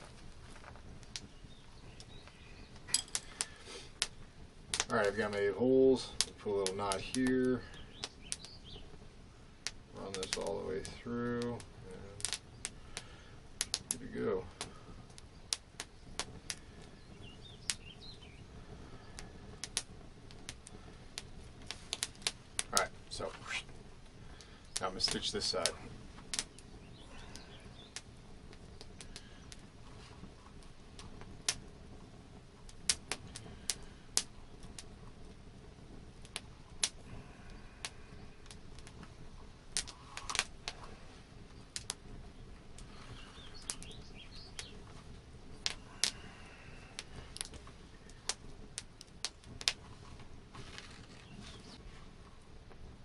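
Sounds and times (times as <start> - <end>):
faint bird chirps: 26.5 - 28.0, 42.9 - 44.8.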